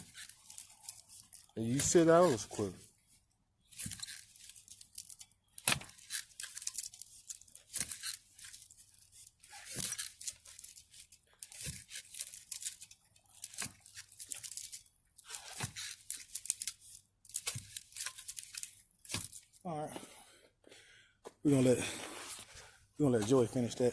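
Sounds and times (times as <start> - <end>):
soil crunching and scraping: 0.0 - 19.6, 21.5 - 23.9
digging tool thumping dirt: 1.7 - 2.4, 5.6 - 6.0.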